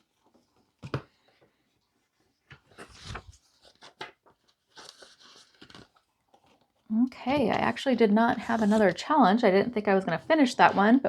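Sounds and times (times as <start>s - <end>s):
paper rustling and tapping: 0.2s - 1.4s, 2.4s - 6.6s.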